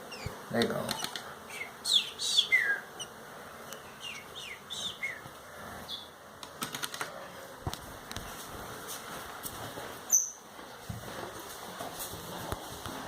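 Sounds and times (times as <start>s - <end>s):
songbirds chirping: 0.0s - 7.6s, 10.0s - 10.5s
sharp clicks: 0.6s - 1.3s, 6.4s - 7.1s.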